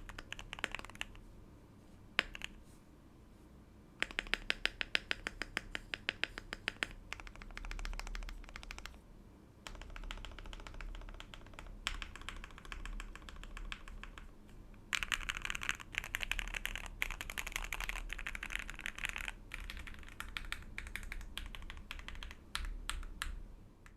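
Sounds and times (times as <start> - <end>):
mechanical keyboard typing: 0.0 - 1.2, 2.2 - 2.6, 4.0 - 9.0, 9.6 - 14.3, 14.9 - 23.9.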